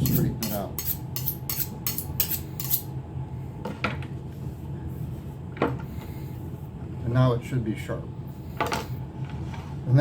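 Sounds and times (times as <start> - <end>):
knife on sharpening steel: 0.0 - 2.9.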